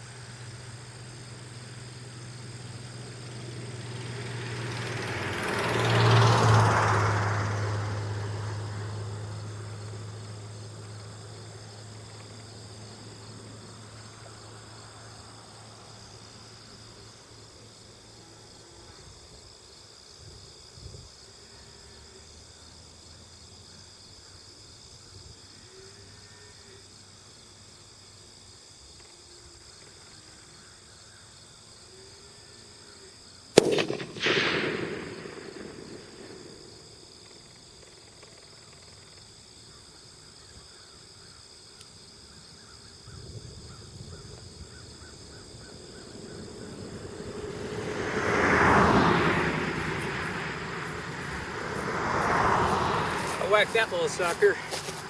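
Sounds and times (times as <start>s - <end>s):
insects chirring: 0.0s - 55.0s
rifle shot: 33.6s - 37.4s
rolling gunshot report: 33.6s - 38.4s, 53.1s - 55.0s.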